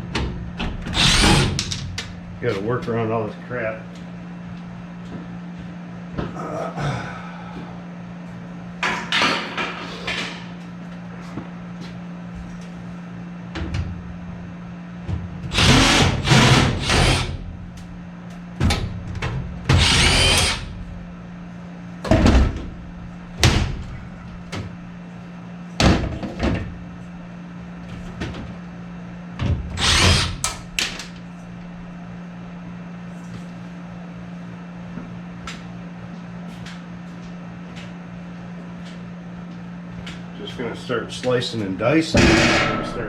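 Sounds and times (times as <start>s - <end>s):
steady low hum: 0.0s - 43.0s
cordless drill spinning: 29.8s - 30.3s
metal clanking and knocking: 42.1s - 43.0s.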